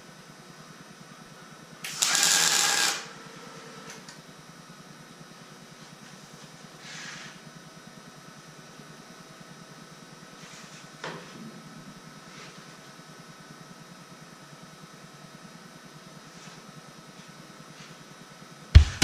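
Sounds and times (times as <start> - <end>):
welder bursts: 1.8 - 3.2.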